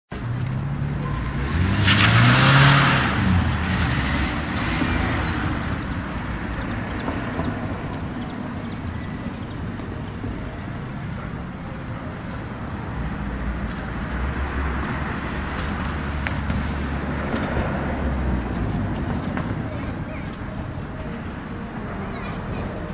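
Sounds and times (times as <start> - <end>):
distant traffic: 0.1 - 22.9
car passing close: 0.2 - 11.2.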